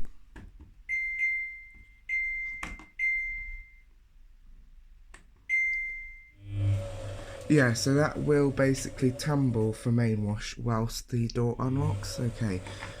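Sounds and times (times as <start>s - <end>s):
washing machine control panel beeps: 0.9s - 3.9s, 5.5s - 6.8s.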